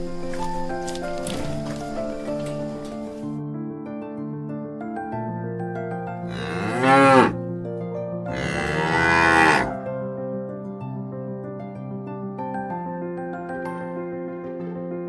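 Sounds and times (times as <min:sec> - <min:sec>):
soft background music: 0:00.0 - 0:15.0
cow mooing: 0:06.2 - 0:07.4, 0:08.3 - 0:09.8.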